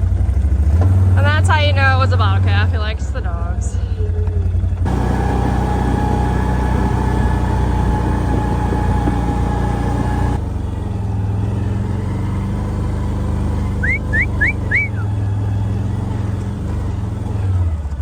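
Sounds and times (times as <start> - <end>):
vehicle engine running: 0.0 - 18.0
high engine tone: 1.2 - 18.0
short rising chirps: 13.7 - 15.1.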